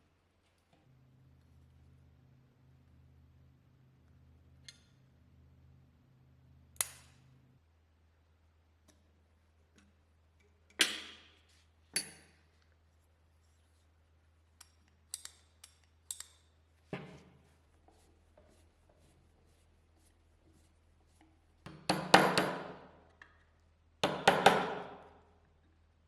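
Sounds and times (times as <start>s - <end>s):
clinks of small hand tools: 14.6s - 16.6s.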